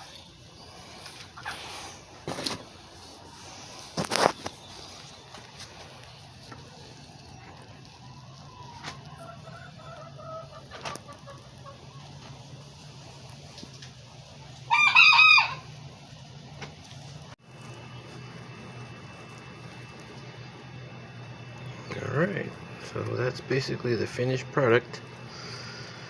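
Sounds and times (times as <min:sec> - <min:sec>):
low steady hum: 0:00.0 - 0:26.0
rooster crowing: 0:07.8 - 0:10.7, 0:14.7 - 0:15.8.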